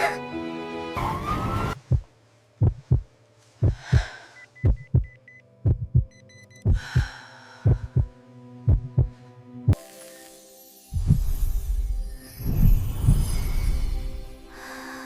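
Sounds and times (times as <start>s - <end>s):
heartbeat thumps: 1.8s - 9.8s, 11.0s - 11.4s.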